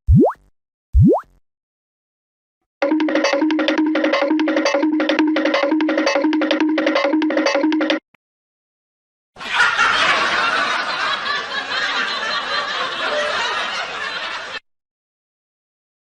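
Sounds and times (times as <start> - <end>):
short rhythmic musical effect: 2.8 - 8.0
people laughing: 9.4 - 14.6.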